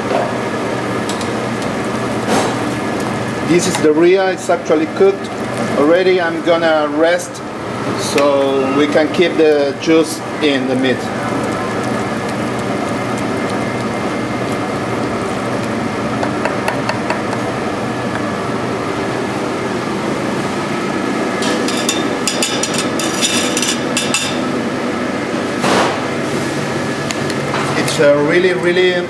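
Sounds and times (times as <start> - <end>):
kitchen hum: 0.0 - 29.0
utensils and cookware clicking: 21.4 - 24.4.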